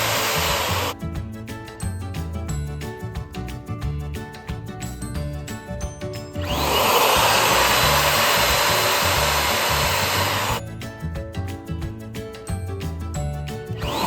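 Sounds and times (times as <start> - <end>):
balloon pump blowing air: 0.0 - 1.0, 6.4 - 10.6
background music with steady beat: 0.0 - 14.0.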